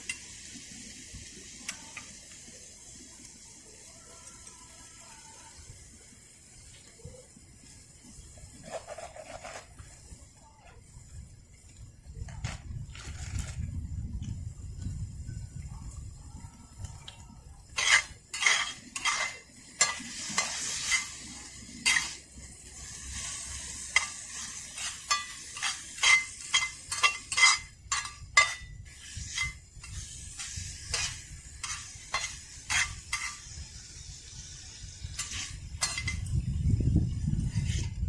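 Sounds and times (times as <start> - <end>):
food sizzling: 0.0 - 38.0
metal utensil scraping a pan: 8.5 - 9.8, 17.7 - 34.2, 35.1 - 36.4, 37.5 - 38.0.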